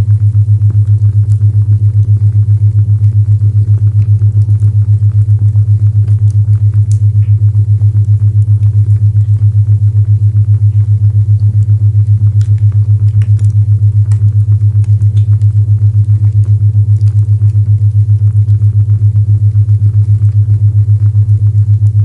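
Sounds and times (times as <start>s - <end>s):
pulsing low tone: 0.0s - 22.0s.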